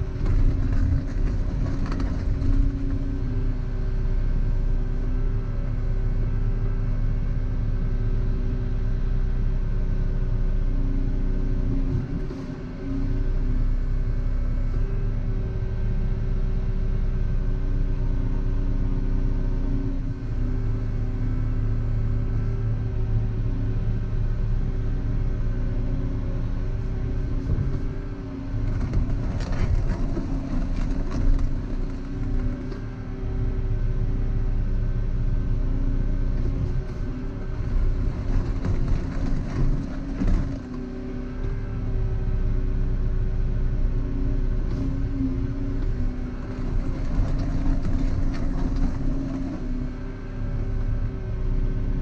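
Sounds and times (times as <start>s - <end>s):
excavator diesel engine running: 0.0s - 52.0s
clatter: 0.2s - 3.0s, 28.6s - 32.9s, 36.4s - 40.9s, 45.8s - 49.8s.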